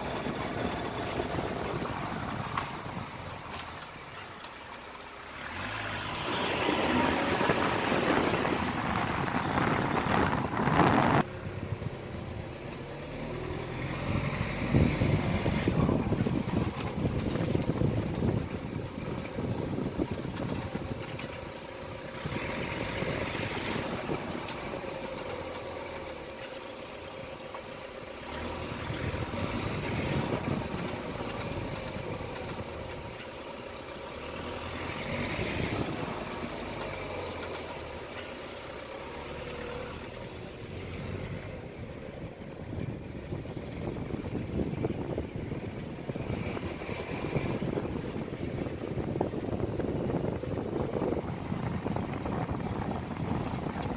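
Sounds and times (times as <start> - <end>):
abnormal drivetrain noise: 0.0 - 53.9
car engine and drivetrain: 0.0 - 53.9.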